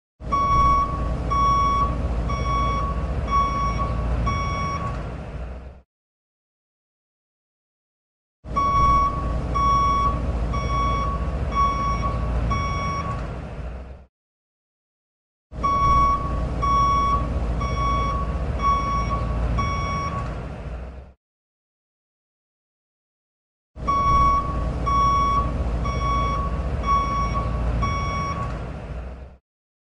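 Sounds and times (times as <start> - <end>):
truck reversing alarm beeping: 0.2 - 5.0, 8.5 - 13.3, 15.6 - 20.4, 23.8 - 28.6
low engine rumble: 0.2 - 5.8, 8.5 - 14.1, 15.6 - 21.2, 23.8 - 29.4.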